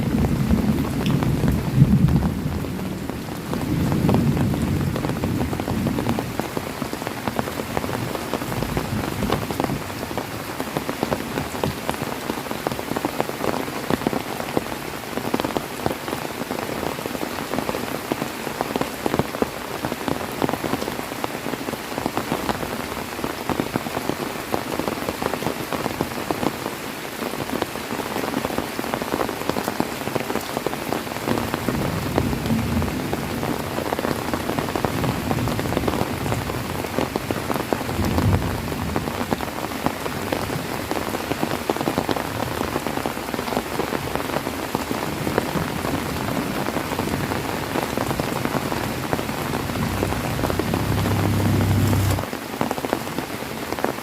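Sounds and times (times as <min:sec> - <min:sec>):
heavy rain falling: 0:00.0 - 0:54.0
low thunder rumble: 0:47.0 - 0:52.3.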